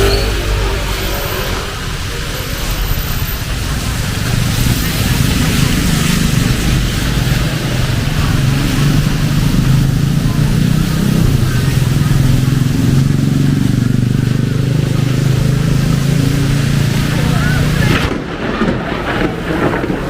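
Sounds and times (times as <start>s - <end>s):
heavy rain pouring: 0.0s - 20.0s
vehicle engine humming: 0.0s - 20.0s.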